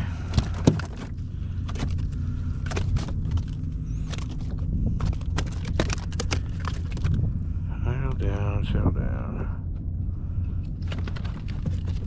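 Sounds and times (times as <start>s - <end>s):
fish thrashing against kayak: 0.0s - 7.4s, 10.5s - 12.0s
steady low rumble: 0.0s - 12.0s.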